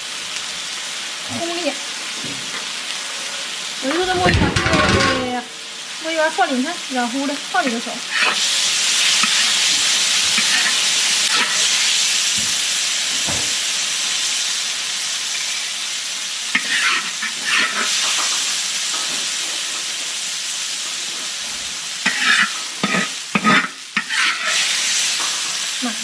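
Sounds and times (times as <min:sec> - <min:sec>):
bean sprouts sizzling in a pan: 0:00.0 - 0:26.0
spatula scraping a pan: 0:07.7 - 0:12.0, 0:16.5 - 0:20.2, 0:20.8 - 0:25.6.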